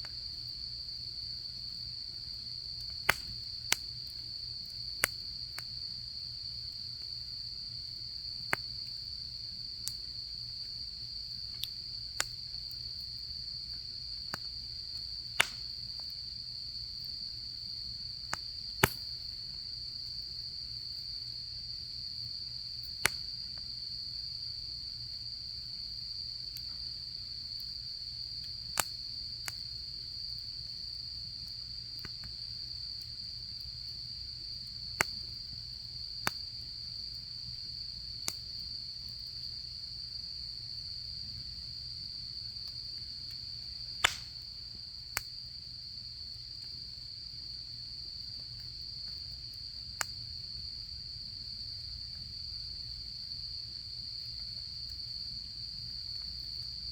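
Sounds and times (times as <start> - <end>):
insects trilling: 0.0 - 56.9
campfire rumbling and popping: 2.2 - 6.0, 7.8 - 16.3, 18.0 - 19.7, 42.8 - 45.5.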